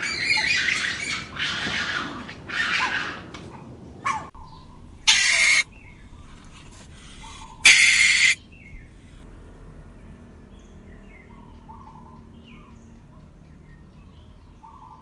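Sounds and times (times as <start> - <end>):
harsh animal calls: 5.0 - 5.7, 6.7 - 8.4.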